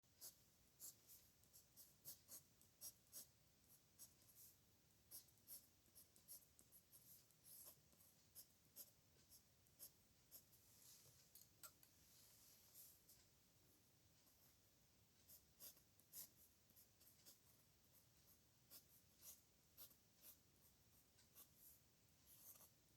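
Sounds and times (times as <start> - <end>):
pen scratching on paper: 0.1 - 3.3, 3.9 - 10.6, 15.3 - 22.8.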